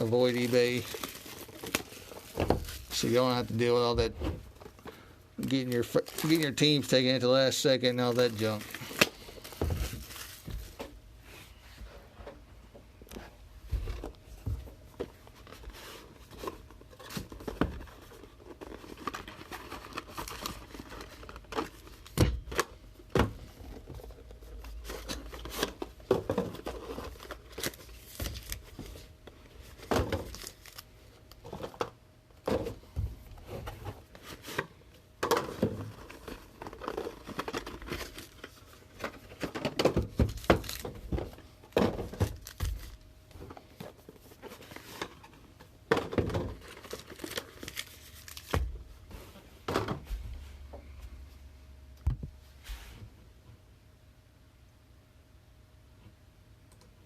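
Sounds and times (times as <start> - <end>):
shrink wrap and cardboard crinkling: 0.0 - 10.8, 15.1 - 22.8, 23.6 - 31.8, 35.4 - 45.4, 46.2 - 48.8.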